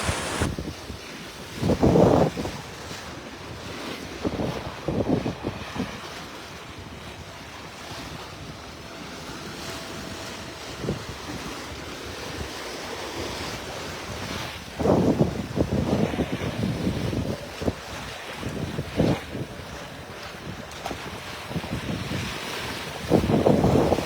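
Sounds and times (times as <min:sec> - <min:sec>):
water rushing past hull: 0:00.0 - 0:24.0
wind buffeting microphone: 0:00.0 - 0:24.0.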